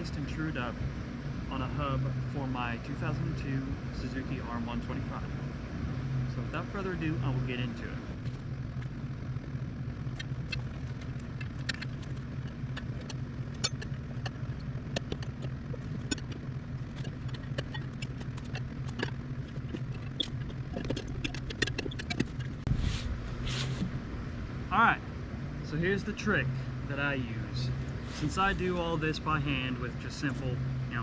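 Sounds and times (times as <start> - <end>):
steady low hum: 0.0 - 31.0
rubbing noises: 8.2 - 24.0, 27.7 - 31.0.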